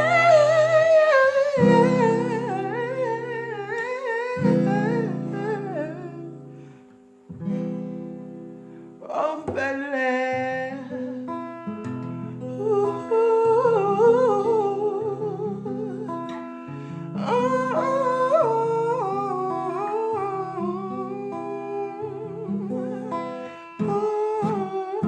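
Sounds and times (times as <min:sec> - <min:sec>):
person humming: 0:00.0 - 0:06.6, 0:11.7 - 0:25.0
acoustic guitar chords: 0:00.0 - 0:25.0.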